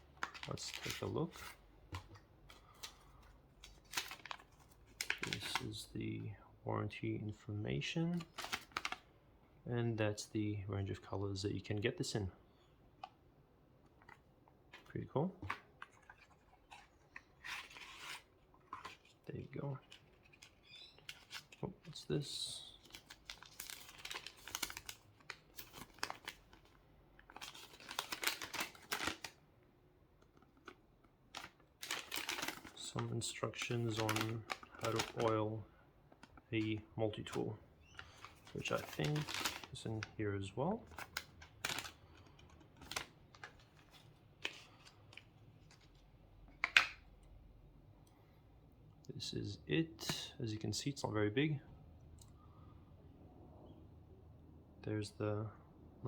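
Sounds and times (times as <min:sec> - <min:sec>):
box and packaging handled: 0:00.0 - 0:05.7, 0:13.8 - 0:29.4, 0:30.2 - 0:35.4, 0:37.2 - 0:40.1, 0:40.8 - 0:46.8
paper leaflet rustling: 0:00.2 - 0:05.6, 0:27.3 - 0:29.4, 0:31.4 - 0:35.4, 0:37.9 - 0:40.1, 0:40.9 - 0:46.0.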